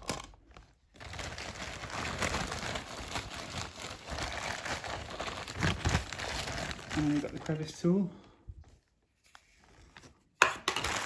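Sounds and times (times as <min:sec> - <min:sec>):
plastic packaging crinkling: 0:00.0 - 0:07.9.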